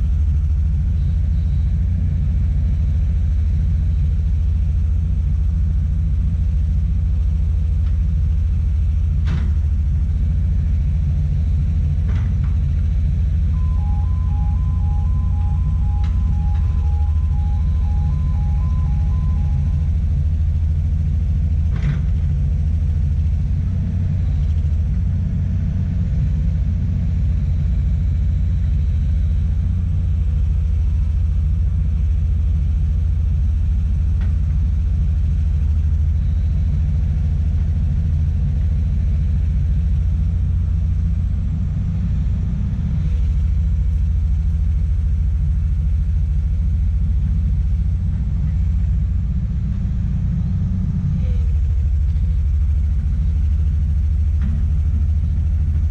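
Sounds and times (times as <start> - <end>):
diesel engine rumbling: 0.0 - 55.9.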